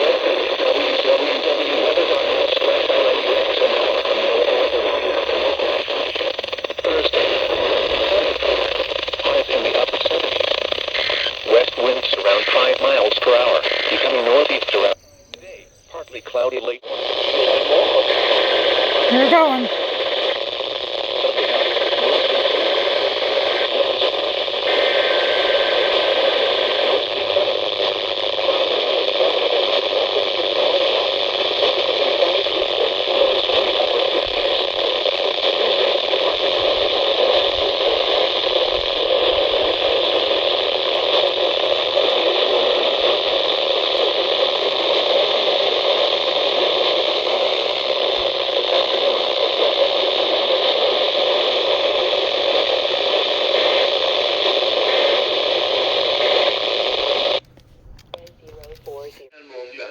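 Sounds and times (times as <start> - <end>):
radio static hiss: 0.0 - 59.9
faint steady tone: 13.1 - 16.8.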